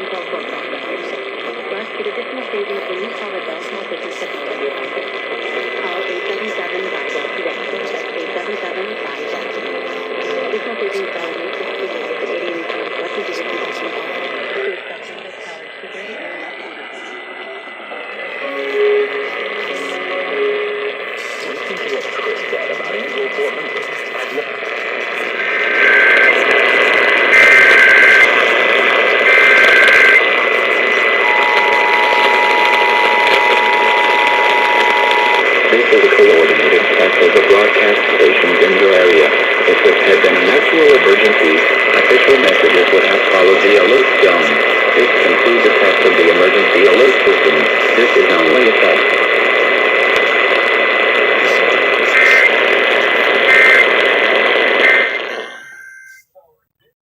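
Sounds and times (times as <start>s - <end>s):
radio static: 0.0s - 56.3s
two-tone attention signal: 18.4s - 21.0s, 27.2s - 28.3s, 29.2s - 30.2s, 31.2s - 35.5s, 54.8s - 56.3s
digital data bursts: 25.3s - 30.2s, 54.7s - 56.2s
two-tone warbling data bursts: 54.8s - 56.3s.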